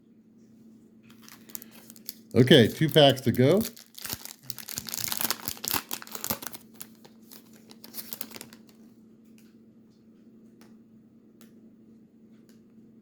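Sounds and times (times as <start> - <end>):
card pack wrapper crackling: 1.1 - 8.8.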